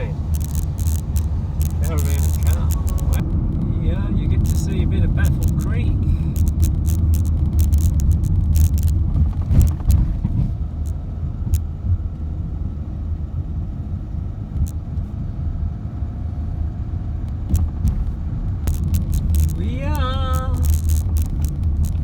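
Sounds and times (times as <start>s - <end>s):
car engine and tyre rumble: 0.0s - 22.0s.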